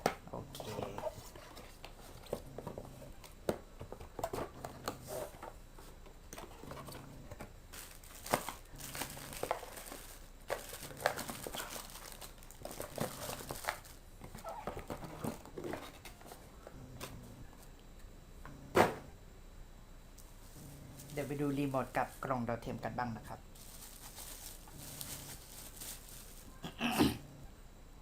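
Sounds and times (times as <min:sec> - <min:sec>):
plastic packaging crinkling: 0:07.7 - 0:15.5, 0:23.5 - 0:26.6.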